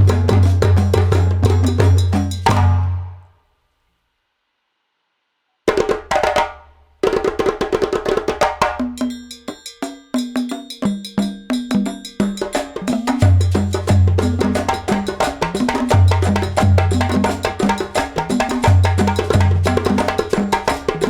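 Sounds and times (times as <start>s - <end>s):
percussive music with bass line: 0.0s - 3.1s, 7.8s - 21.0s.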